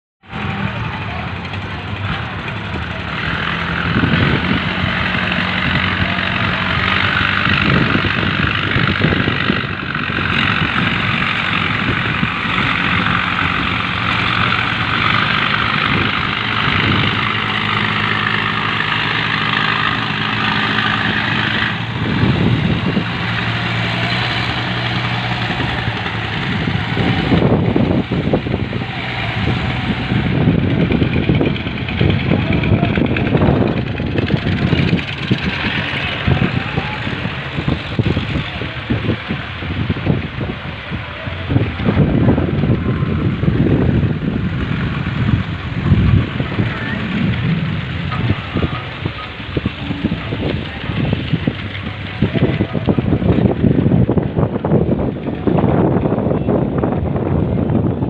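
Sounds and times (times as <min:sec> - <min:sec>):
boat engines droning: 0:00.2 - 0:58.0.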